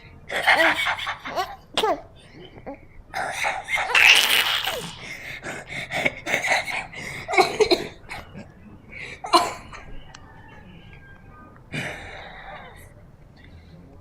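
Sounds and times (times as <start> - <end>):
baby giggling: 0.3 - 8.5
boy coughing: 3.1 - 8.4, 9.2 - 9.9.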